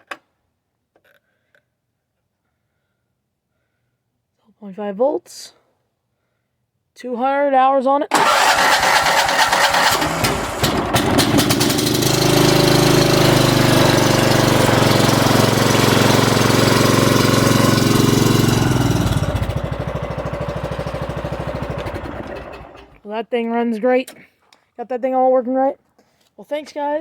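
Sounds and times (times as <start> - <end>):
lawn mower engine: 8.1 - 23.0.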